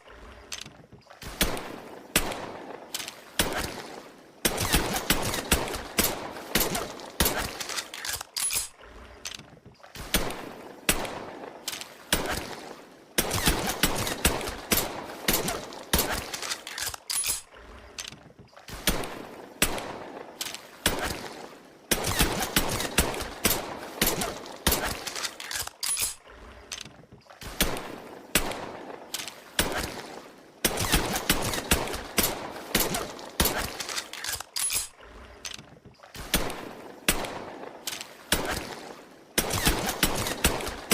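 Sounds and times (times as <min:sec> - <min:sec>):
pistol shots: 0:27.4 - 0:34.9, 0:36.2 - 0:40.9.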